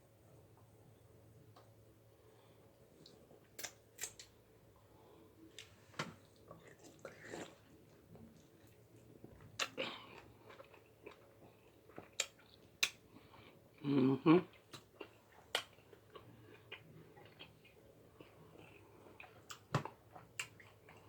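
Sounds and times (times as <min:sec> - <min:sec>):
chewing with crunches: 0:05.5 - 0:13.6, 0:14.4 - 0:21.0.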